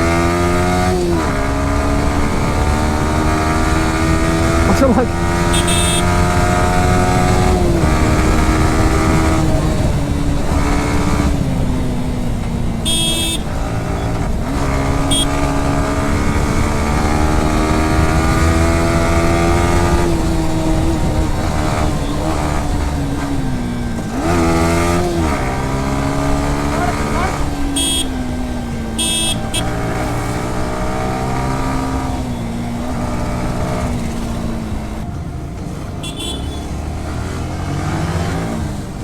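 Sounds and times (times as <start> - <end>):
motorcycle engine running: 0.0 - 39.0
short high-pitched beep: 5.5 - 6.1.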